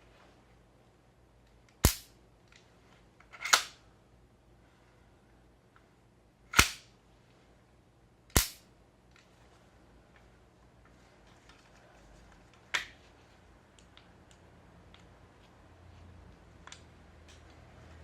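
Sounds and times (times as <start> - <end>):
airsoft rifle shots: 1.8 - 2.1, 6.5 - 6.9, 8.4 - 8.6.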